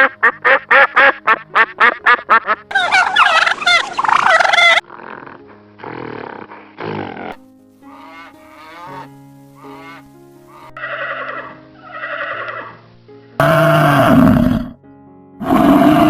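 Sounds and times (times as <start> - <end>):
background music: 0.0 - 16.0
farm animal calls: 2.1 - 12.8.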